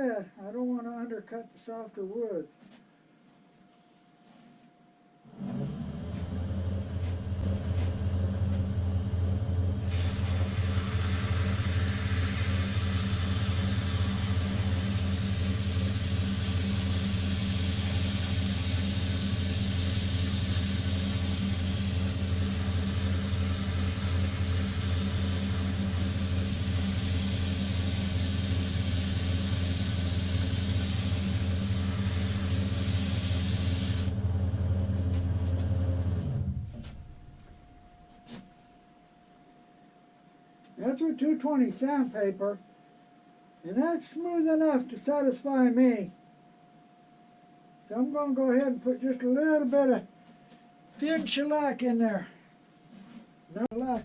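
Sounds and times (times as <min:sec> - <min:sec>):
wood lathe motor hum: 0:05.3 - 0:36.5
sandpaper hissing on spinning wood: 0:09.8 - 0:34.1.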